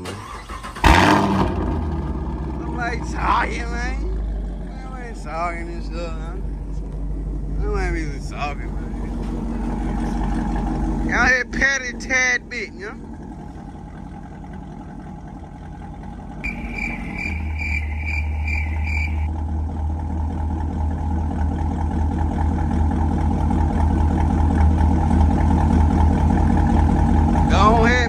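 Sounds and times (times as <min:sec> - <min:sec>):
car engine exhaust drone: 0:00.0 - 0:28.0.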